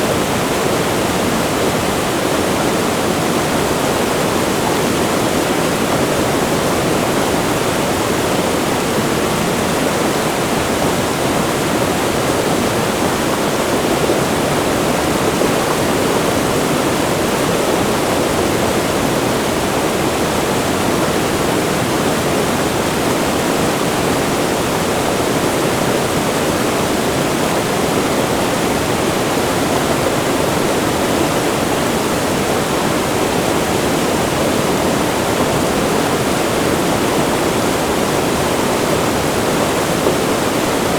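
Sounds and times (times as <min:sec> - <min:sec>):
river water rushing: 0:00.0 - 0:40.9.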